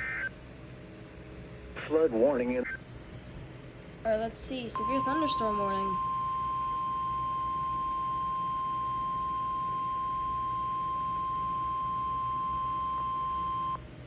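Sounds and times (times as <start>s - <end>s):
steady high alarm tone: 4.7s - 13.8s.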